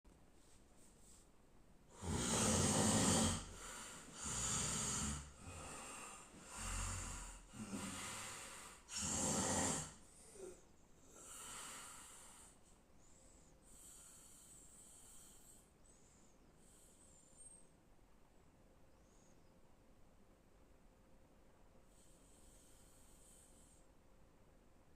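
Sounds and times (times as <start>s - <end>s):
rasping snore-like breaths: 1.9s - 12.6s, 13.7s - 15.7s, 21.9s - 23.9s.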